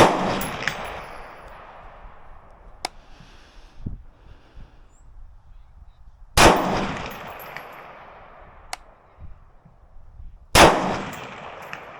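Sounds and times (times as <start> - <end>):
gunshots with echo: 0.0 - 2.2, 6.4 - 8.7, 10.6 - 11.9.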